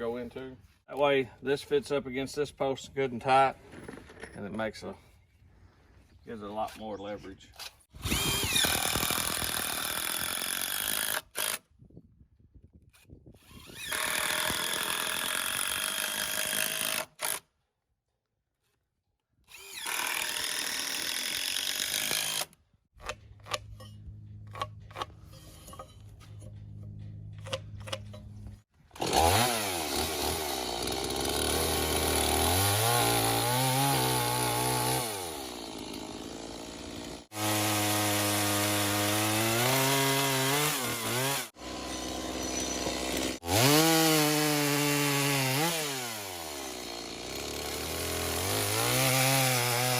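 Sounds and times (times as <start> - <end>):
chainsaw cutting wood: 7.9 - 11.7, 13.4 - 17.5, 19.5 - 23.8, 27.4 - 49.9.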